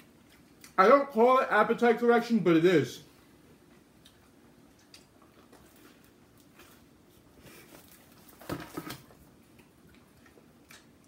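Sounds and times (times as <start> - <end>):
chewing and mouth sounds: 0.0 - 0.8, 3.6 - 8.2, 9.3 - 11.0.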